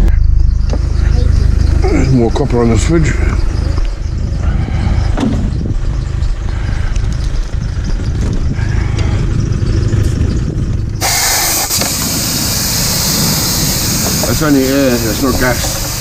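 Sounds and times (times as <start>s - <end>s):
low rumble: 0.0s - 16.0s
air hissing from a pipe: 11.0s - 16.0s.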